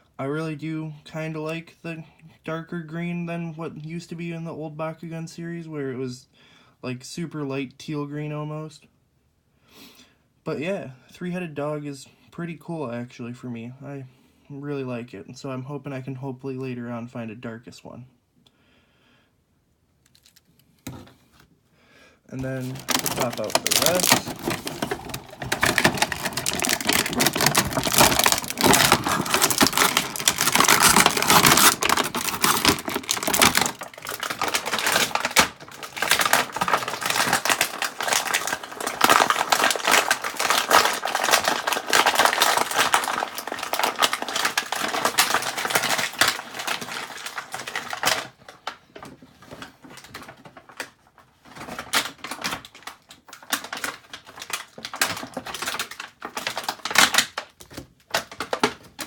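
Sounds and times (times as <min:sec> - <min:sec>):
plastic packaging clicks and crackles: 0:20.0 - 0:20.9, 0:22.4 - 0:59.0.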